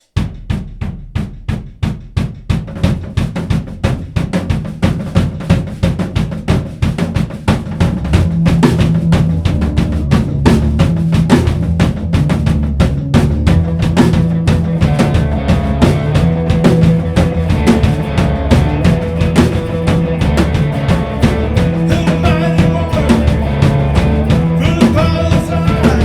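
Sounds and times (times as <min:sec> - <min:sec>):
bass drum and snare beat: 0:00.0 - 0:26.0
rock band playing: 0:07.8 - 0:26.0.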